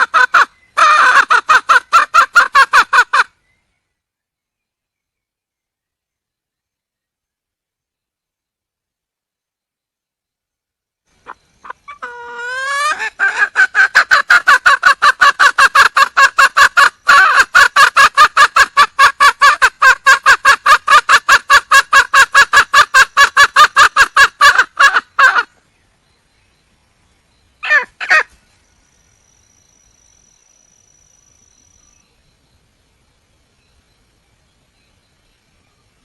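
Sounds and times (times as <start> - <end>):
hen clucking call: 0.0 - 3.3, 11.2 - 25.5, 27.6 - 28.3.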